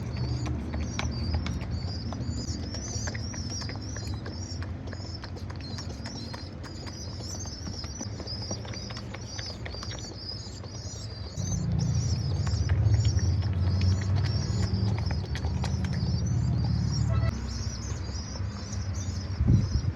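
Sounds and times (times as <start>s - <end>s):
birds chirping: 0.0s - 19.9s
low rumble: 11.4s - 19.9s.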